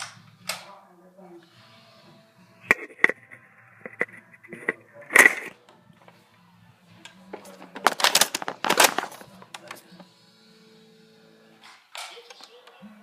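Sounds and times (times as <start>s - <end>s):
clattering burst: 7.4s - 9.3s.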